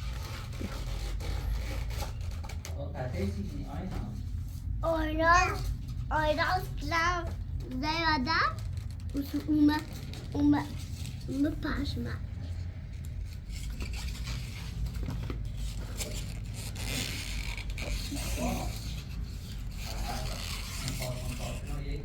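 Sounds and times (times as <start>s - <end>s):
crayon rubbing on paper: 13.5s - 22.0s.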